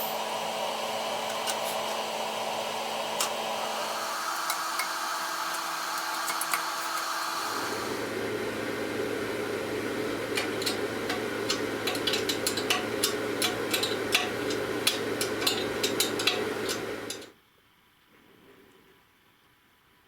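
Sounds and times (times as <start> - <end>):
electric workshop machine humming: 0.0 - 17.3.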